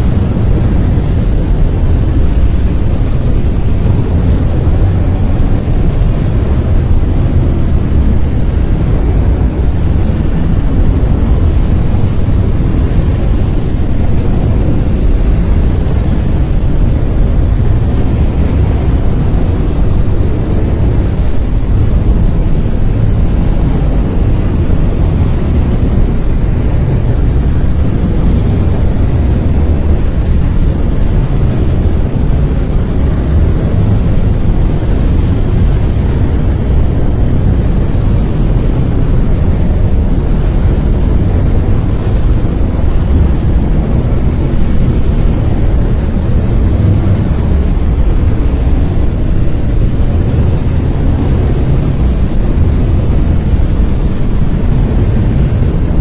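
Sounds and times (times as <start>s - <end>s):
deep rumbling brown noise: 0.0s - 56.0s.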